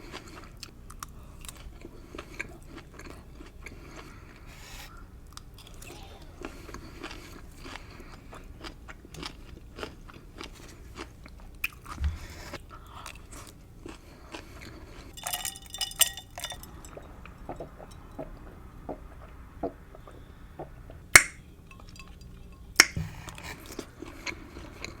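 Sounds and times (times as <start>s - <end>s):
chewing and biting food: 0.0s - 25.0s.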